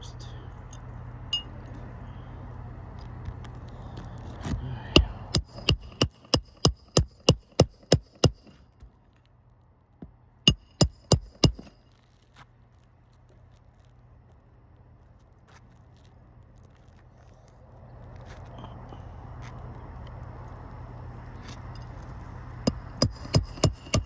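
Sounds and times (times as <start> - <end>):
hammer striking metal: 1.3 - 1.6, 4.9 - 8.5, 10.5 - 11.7, 22.7 - 24.0.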